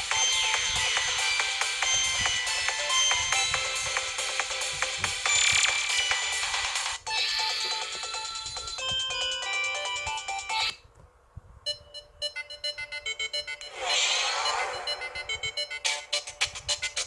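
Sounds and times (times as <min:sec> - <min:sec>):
polyphonic ringtone melody: 0:00.0 - 0:10.8, 0:11.7 - 0:17.0
short swoosh: 0:13.7 - 0:15.6.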